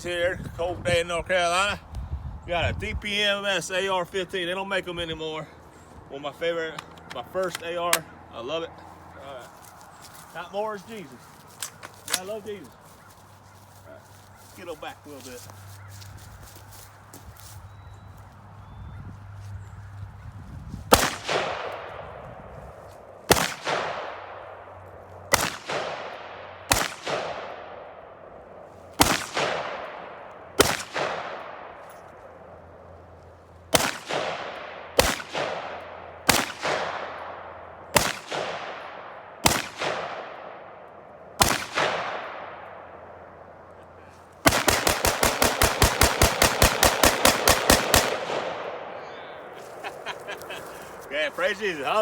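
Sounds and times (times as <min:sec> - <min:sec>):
rapid string of rifle shots: 0:20.9 - 0:22.0, 0:23.3 - 0:24.7, 0:25.3 - 0:27.9, 0:29.0 - 0:31.8, 0:33.7 - 0:40.8, 0:41.4 - 0:42.7, 0:44.4 - 0:49.0
rifle shots echoing: 0:20.9 - 0:22.3, 0:23.2 - 0:32.4, 0:33.7 - 0:43.6, 0:44.4 - 0:50.5.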